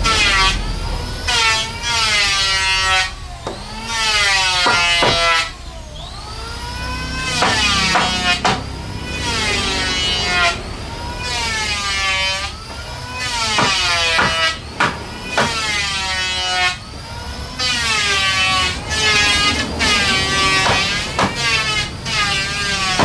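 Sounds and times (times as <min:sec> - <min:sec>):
power tool cutting wood: 0:00.0 - 0:23.0
sharp knocks: 0:04.6 - 0:05.5, 0:07.3 - 0:08.8, 0:12.7 - 0:16.0, 0:18.3 - 0:23.0.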